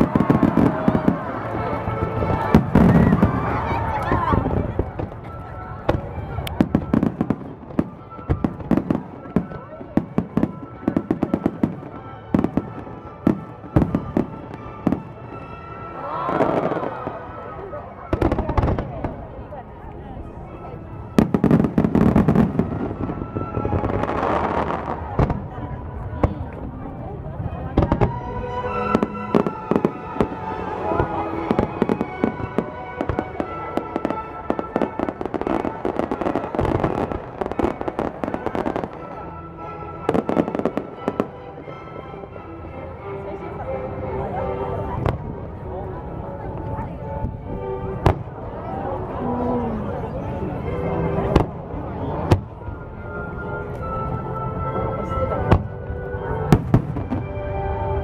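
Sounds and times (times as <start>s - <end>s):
fireworks bangs and crackles: 0.0s - 15.6s, 16.3s - 39.3s, 40.1s - 41.3s, 44.9s - 54.2s, 55.0s - 58.0s
music with held notes: 0.0s - 58.0s
aerial fireworks exploding: 2.2s - 5.2s.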